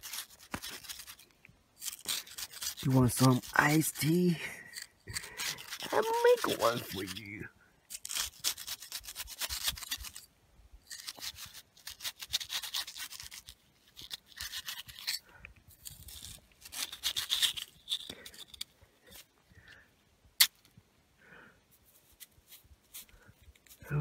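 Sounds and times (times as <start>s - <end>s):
rapid scraping strokes: 0.0s - 7.4s, 8.0s - 10.3s, 10.9s - 15.2s, 15.8s - 19.2s.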